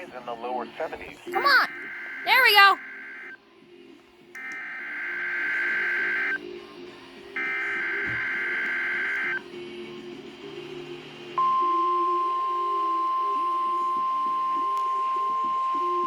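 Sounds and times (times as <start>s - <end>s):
screechy digital data bursts: 1.4s - 3.4s, 4.7s - 6.4s
steady warning alarm tone: 1.4s - 3.4s, 4.4s - 6.4s, 7.4s - 9.4s.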